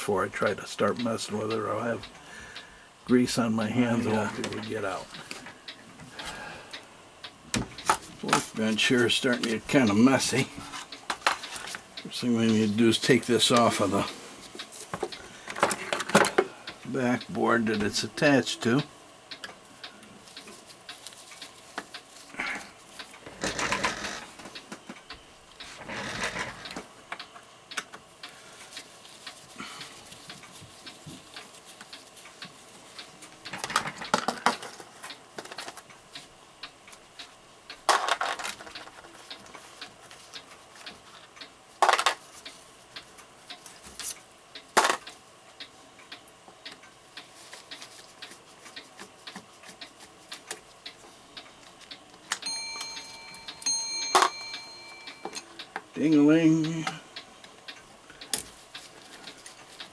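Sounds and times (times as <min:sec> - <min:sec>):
small clock bell ringing: 0:52.4 - 0:56.3.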